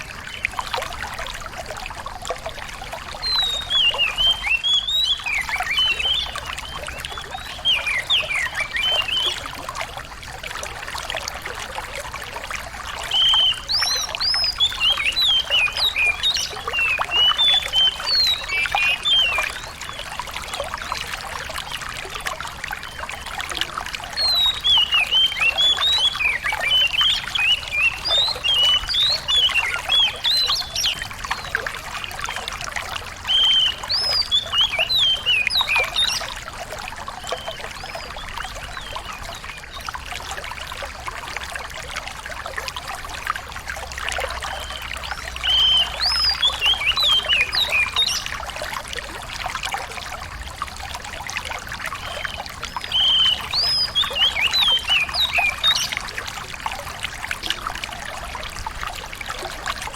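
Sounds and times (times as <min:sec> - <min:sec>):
water trickling: 0:00.0 - 0:59.9
songbird twittering: 0:03.2 - 0:09.5, 0:13.0 - 0:21.0, 0:24.1 - 0:32.5, 0:33.2 - 0:36.4, 0:37.2 - 0:39.5, 0:44.4 - 0:48.4, 0:52.0 - 0:56.1.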